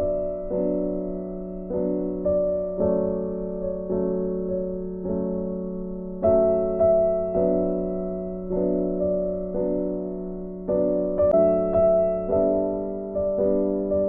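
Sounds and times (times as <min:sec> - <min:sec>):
slow electric piano chords: 0:00.0 - 0:14.0.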